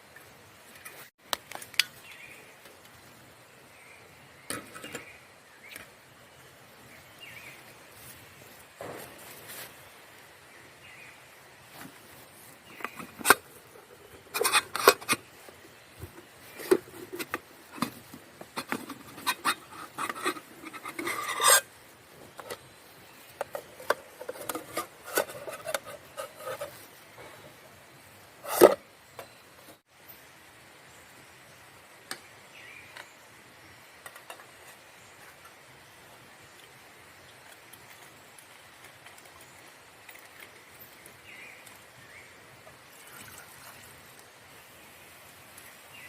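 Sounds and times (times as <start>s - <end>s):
objects scraping and rubbing: 11.6s - 27.6s, 28.4s - 28.9s.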